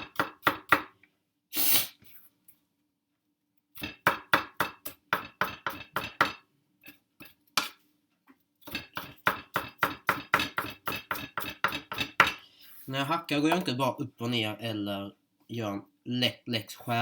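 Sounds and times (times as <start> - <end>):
knife chopping on cutting board: 0.0 - 0.9, 3.8 - 6.4, 8.6 - 12.4.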